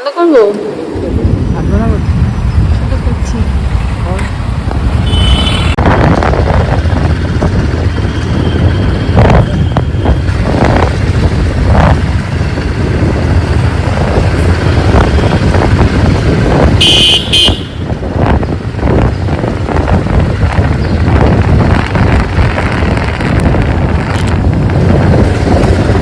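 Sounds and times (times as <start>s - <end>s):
motorcycle engine and road rumble: 0.0s - 26.0s
wind on microphone: 0.7s - 26.0s
vehicle horn: 4.9s - 5.8s, 16.6s - 18.0s.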